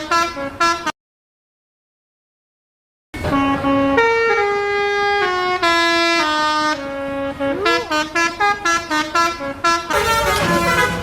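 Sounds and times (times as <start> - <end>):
bus musical horn melody: 0.0 - 1.0, 3.2 - 11.0.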